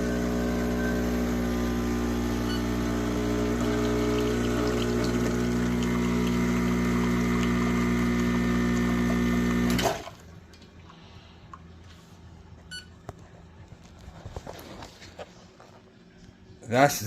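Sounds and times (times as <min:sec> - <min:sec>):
espresso machine pump humming: 0:00.0 - 0:09.9.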